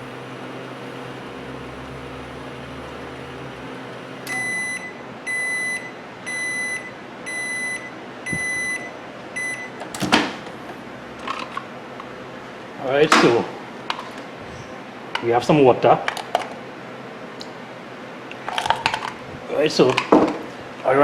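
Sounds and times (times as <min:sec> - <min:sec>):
microwave oven humming: 0:00.0 - 0:21.0
high beeps: 0:04.3 - 0:09.7
microwave door clacking open: 0:09.8 - 0:10.6, 0:13.1 - 0:13.5.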